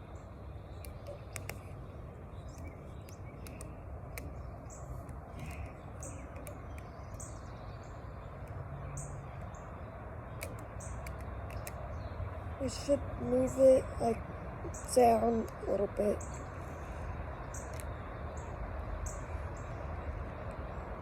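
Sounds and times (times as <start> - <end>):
low outdoor background hum: 0.0 - 21.0
small birds chirping: 0.0 - 21.0
light clicks: 0.8 - 1.8, 2.5 - 7.4, 10.3 - 11.9, 17.5 - 18.0.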